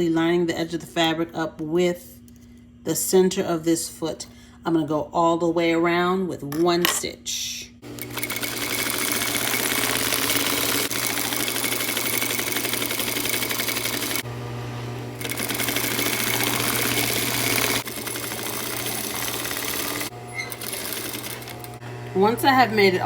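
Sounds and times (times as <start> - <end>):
electric sewing machine stitching: 7.8 - 23.0.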